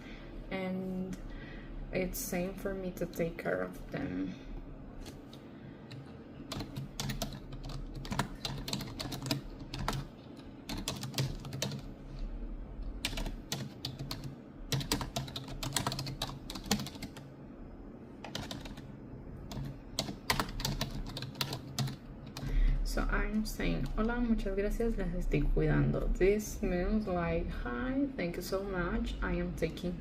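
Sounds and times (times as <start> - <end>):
fingernails tapping keyboard keys: 5.9 - 11.9, 13.0 - 17.2, 18.2 - 18.8, 19.5 - 22.4.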